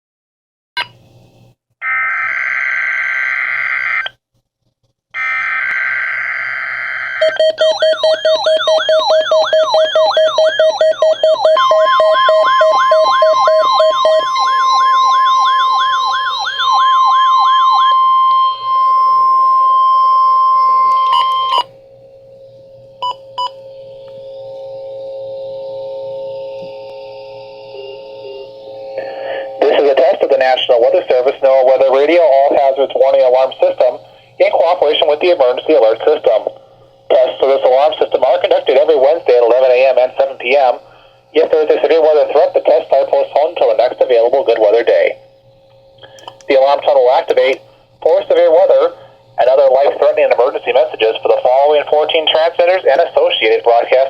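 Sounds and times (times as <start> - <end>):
warbling siren tones: 1.8 - 4.1, 5.2 - 32.2
steady warning alarm tone: 5.2 - 54.0
fast beeping: 7.2 - 21.7
harsh buzzing digital bursts: 24.9 - 30.8.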